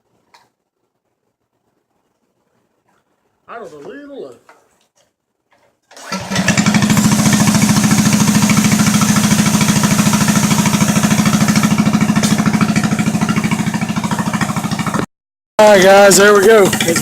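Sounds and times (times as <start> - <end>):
small engine idling: 5.9 - 15.1, 16.0 - 17.0.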